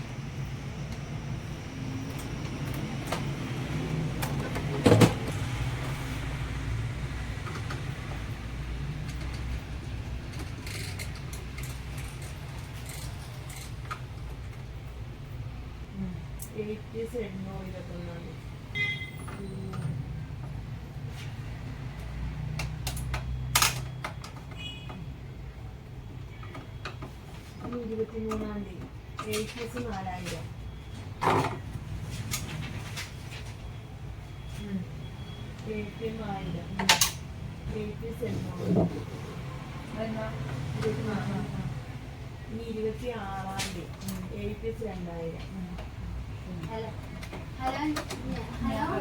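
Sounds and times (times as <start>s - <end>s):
printer mechanism whirring: 0.0s - 15.1s.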